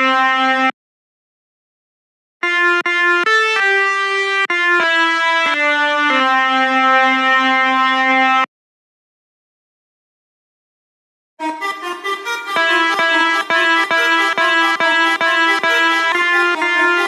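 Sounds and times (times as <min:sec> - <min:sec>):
bus horn playing a tune: 0:11.4 - 0:17.0.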